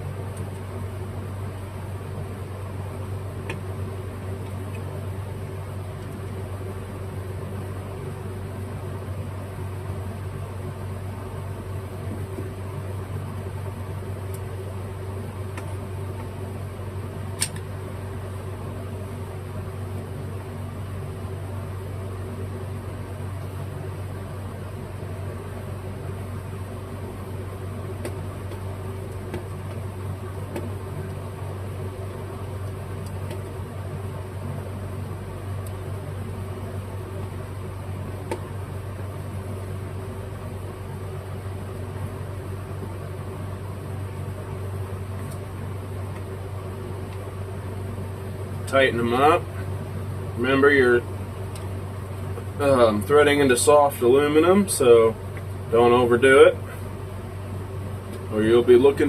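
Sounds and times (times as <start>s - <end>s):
appliance fan humming: 0.0s - 59.0s
sharp click: 17.4s - 17.7s.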